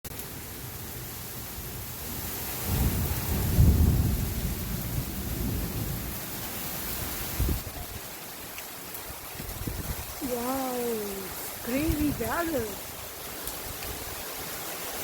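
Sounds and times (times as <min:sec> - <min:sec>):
steady rain: 0:00.0 - 0:15.0
thunder rumbling: 0:00.6 - 0:08.0.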